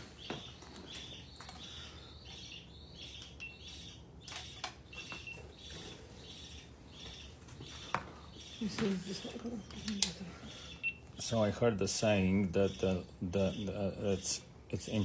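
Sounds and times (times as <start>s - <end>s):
budgie chirping: 0.0s - 15.0s
sharp clicks: 4.2s - 5.3s.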